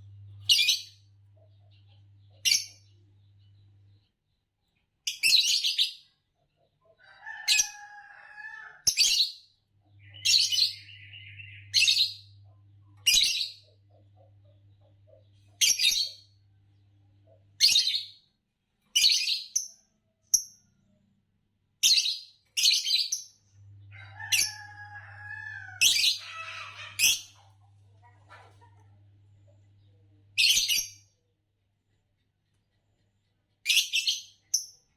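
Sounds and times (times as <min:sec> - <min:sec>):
faint low hum: 0:00.0 - 0:04.6, 0:09.8 - 0:15.6, 0:16.2 - 0:17.6, 0:27.4 - 0:30.5
lovebirds chirping: 0:00.0 - 0:06.2, 0:07.0 - 0:18.2, 0:21.8 - 0:31.1
bird chattering: 0:10.0 - 0:16.2, 0:23.9 - 0:29.0.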